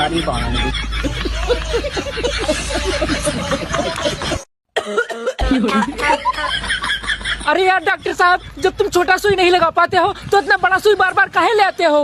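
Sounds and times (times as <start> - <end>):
man coughing: 4.8 - 6.0.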